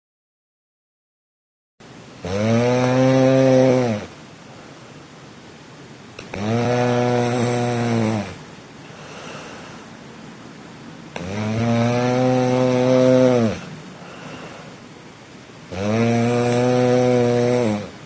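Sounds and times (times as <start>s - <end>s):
person snoring: 2.2s - 4.1s, 6.2s - 9.8s, 11.2s - 14.8s, 15.7s - 18.0s
quiet breathing: 3.4s - 5.2s, 6.2s - 10.5s, 11.1s - 18.0s.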